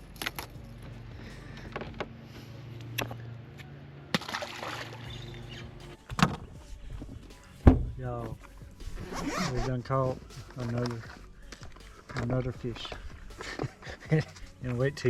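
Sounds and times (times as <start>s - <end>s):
water rushing and splashing: 4.2s - 5.1s.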